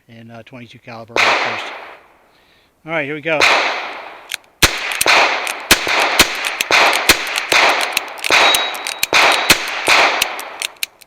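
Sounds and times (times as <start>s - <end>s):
revolver shots with ringing echo: 1.2s - 2.0s, 3.4s - 10.6s.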